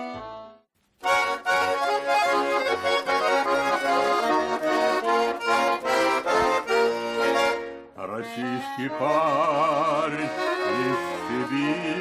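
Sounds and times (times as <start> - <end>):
accordion playing folk tune: 0.0 - 12.0.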